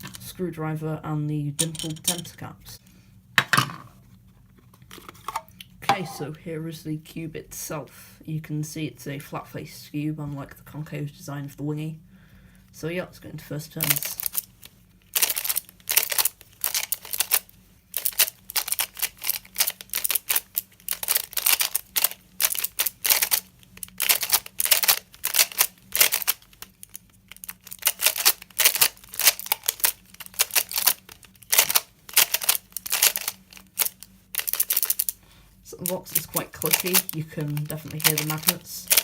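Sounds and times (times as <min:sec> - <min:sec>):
puzzle cube clicking: 0:18.1 - 0:26.7, 0:27.6 - 0:35.2, 0:35.8 - 0:39.0.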